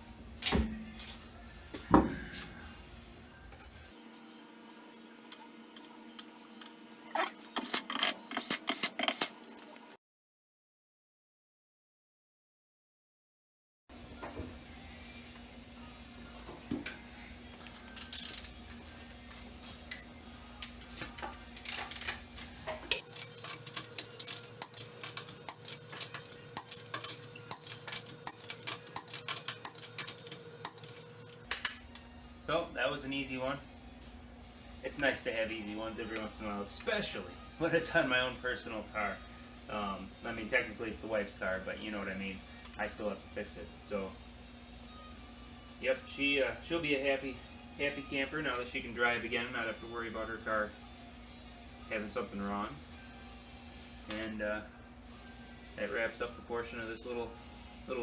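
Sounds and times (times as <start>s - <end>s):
metal tool clicks and scrapes: 7.4s - 9.5s, 22.9s - 31.5s.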